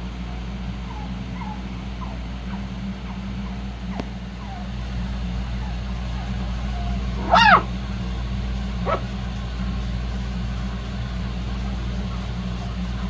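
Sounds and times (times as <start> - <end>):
steady low hum: 0.0 - 13.0
puppy yipping: 0.9 - 2.6, 6.7 - 7.8, 8.8 - 9.2.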